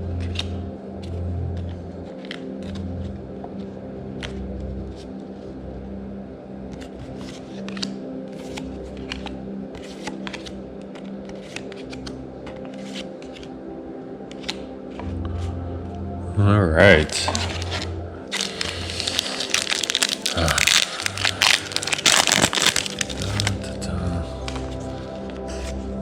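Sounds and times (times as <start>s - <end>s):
trading cards snapping and clicking: 0.2s - 0.6s, 6.7s - 13.5s, 14.2s - 15.1s, 17.2s - 23.7s.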